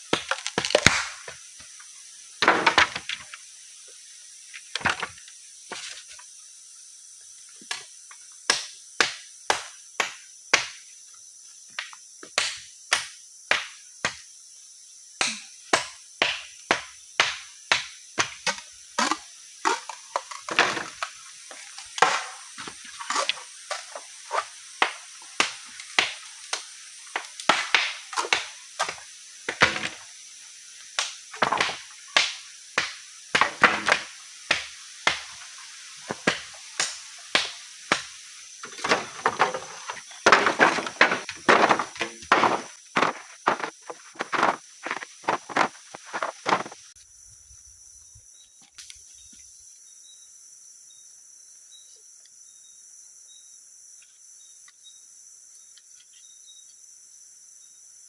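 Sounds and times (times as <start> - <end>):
insects chirring: 0.0 - 58.0
sharp knocks: 37.9 - 46.8.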